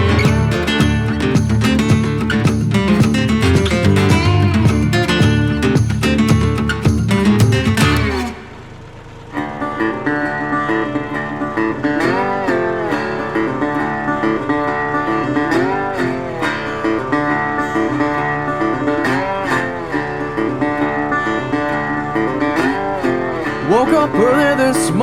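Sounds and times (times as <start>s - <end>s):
acoustic guitar country music: 0.0s - 8.6s, 9.3s - 25.0s.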